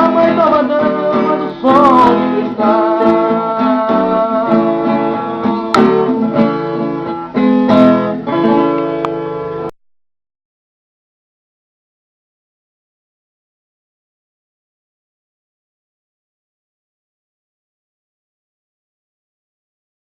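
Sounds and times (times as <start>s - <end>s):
acoustic guitar music: 0.0s - 9.8s.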